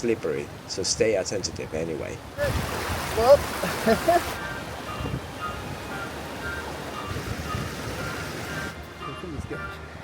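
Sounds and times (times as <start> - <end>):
river rushing: 2.2 - 8.8.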